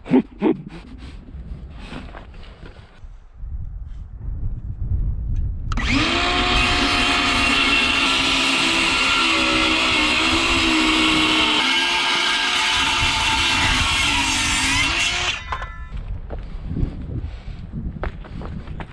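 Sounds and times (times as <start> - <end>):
wind on microphone: 0.3 - 11.6, 12.6 - 18.9
electric power tool motor whining: 5.7 - 15.8.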